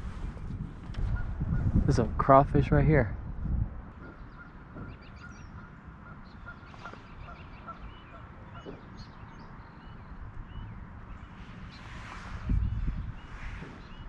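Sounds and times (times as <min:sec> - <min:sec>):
steady low rumble: 0:00.0 - 0:08.2, 0:09.0 - 0:14.0
birds calling: 0:03.1 - 0:14.0.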